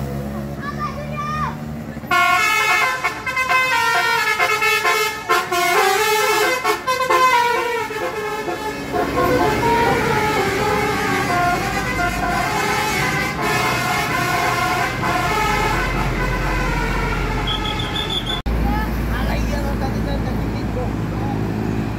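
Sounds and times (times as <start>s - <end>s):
engine and traffic rumble: 0.0s - 21.9s
multi-tone air horn melody: 2.1s - 18.4s.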